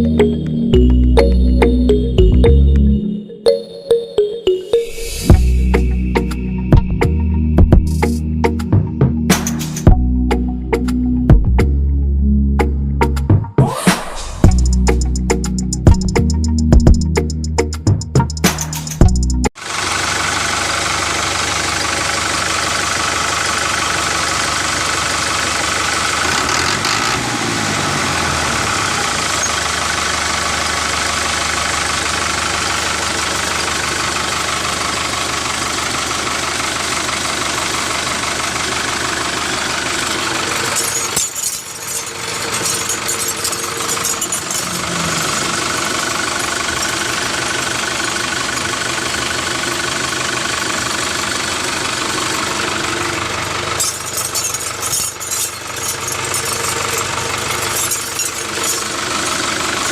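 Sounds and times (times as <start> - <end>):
tractor engine idling with knocking: 18.5 - 59.9.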